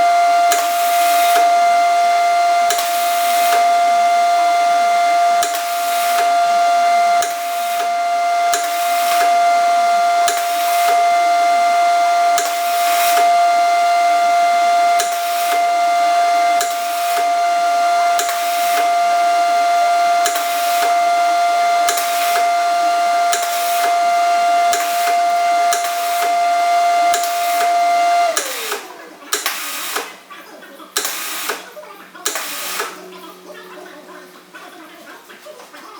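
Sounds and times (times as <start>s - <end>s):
grinder whining: 0.0s - 35.9s
grinding wheel rasping on metal: 31.0s - 35.2s.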